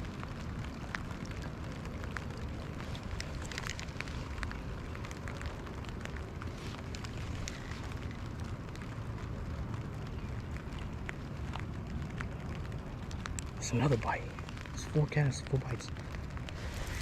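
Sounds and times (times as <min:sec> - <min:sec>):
rain falling: 0:00.0 - 0:17.0
low rumble: 0:15.8 - 0:17.0.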